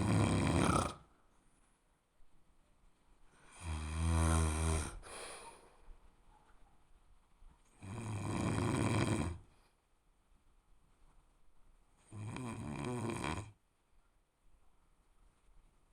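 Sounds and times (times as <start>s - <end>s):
person snoring: 0.0s - 1.0s, 3.5s - 5.2s, 7.8s - 9.4s, 12.1s - 13.6s
person breathing: 4.9s - 5.9s.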